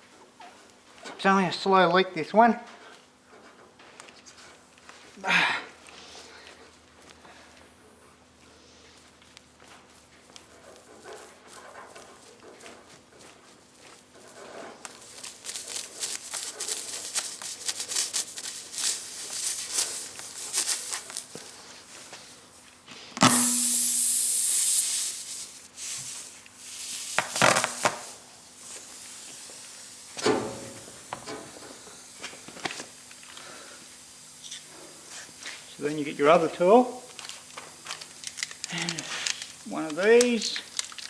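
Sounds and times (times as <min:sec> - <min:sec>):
loud air hiss: 0:23.2 - 0:32.2.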